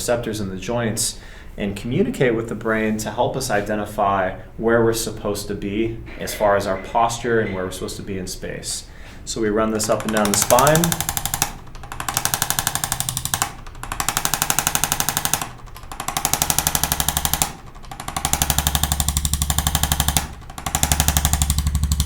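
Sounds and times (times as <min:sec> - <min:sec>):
electric adjusting instrument tapping: 0:09.8 - 0:22.0.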